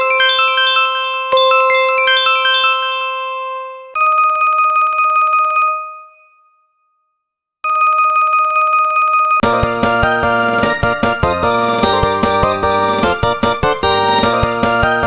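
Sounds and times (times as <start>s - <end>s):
melodic ringtone tune: 0.0s - 4.3s, 9.4s - 15.0s.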